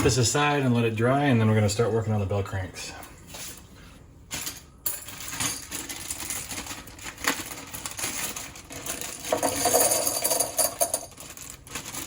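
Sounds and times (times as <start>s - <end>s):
small metal parts clinking: 4.3s - 12.0s.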